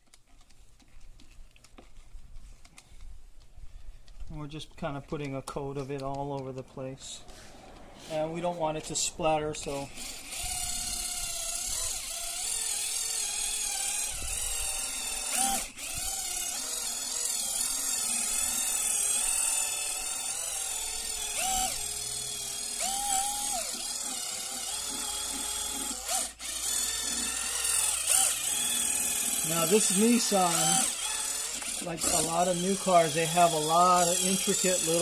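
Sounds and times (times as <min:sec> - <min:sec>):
electric buffer motor whining: 0:09.6 - 0:35.0.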